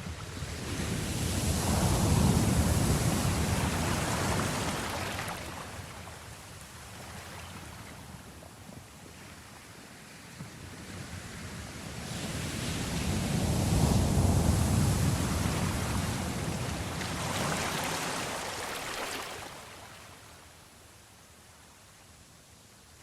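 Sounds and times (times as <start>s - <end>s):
ocean waves breaking: 0.1s - 6.4s, 12.2s - 20.2s.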